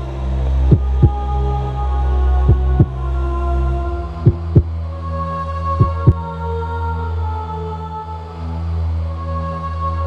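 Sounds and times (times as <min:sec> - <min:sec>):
droning ambient chord: 0:00.0 - 0:10.0
deep heartbeat-like thumps: 0:02.4 - 0:03.0, 0:04.2 - 0:04.7, 0:05.8 - 0:06.2.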